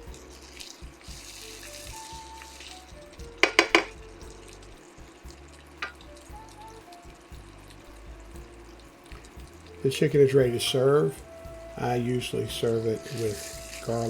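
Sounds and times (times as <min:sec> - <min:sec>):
food sizzling in a pan: 0:00.0 - 0:14.0
quiet background music: 0:00.0 - 0:14.0
sharp knocks: 0:03.4 - 0:04.0.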